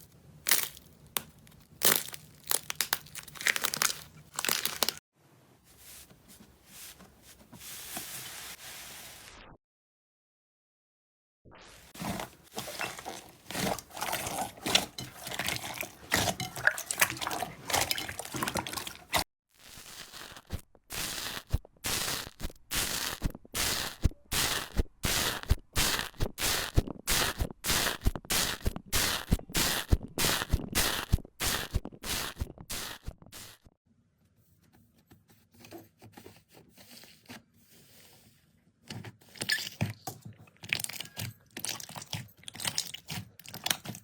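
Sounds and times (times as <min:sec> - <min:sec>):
slime crackling and popping: 0:00.4 - 0:05.0, 0:19.6 - 0:33.6
wet slime squishes: 0:00.4 - 0:05.0, 0:11.9 - 0:19.2, 0:39.2 - 0:44.0.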